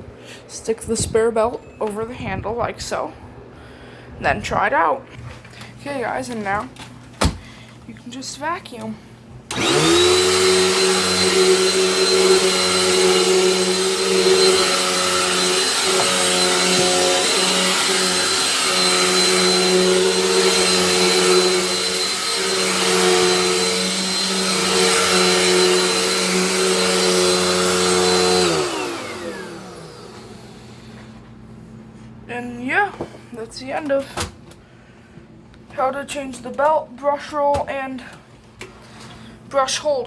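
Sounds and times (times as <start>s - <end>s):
vacuum cleaner motor whining: 9.5s - 31.4s.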